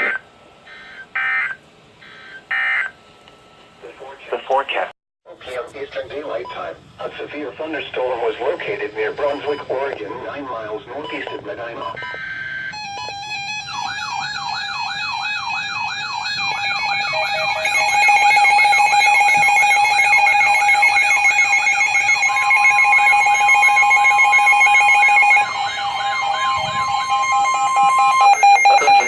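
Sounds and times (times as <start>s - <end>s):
warbling siren: 0.0s - 3.0s, 11.8s - 29.0s
steady high tone: 8.4s - 29.0s
steady beep tone: 9.2s - 29.0s.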